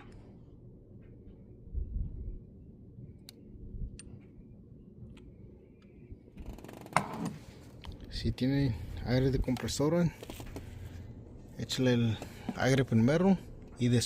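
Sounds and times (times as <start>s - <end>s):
rustling handling noise: 8.9s - 12.9s.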